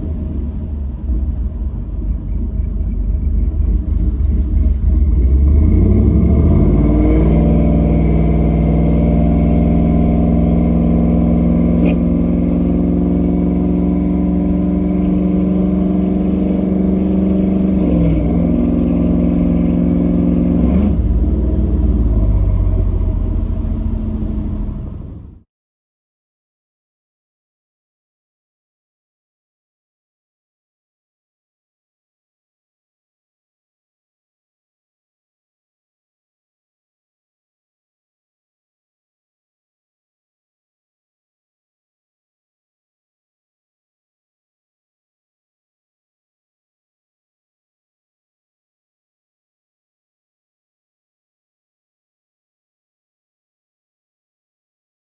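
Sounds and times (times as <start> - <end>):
truck engine revving: 0.0 - 25.4.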